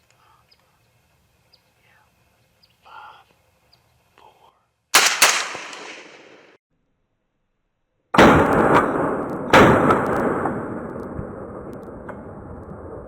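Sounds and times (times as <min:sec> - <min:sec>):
gunshots with echo: 0:05.0 - 0:06.6.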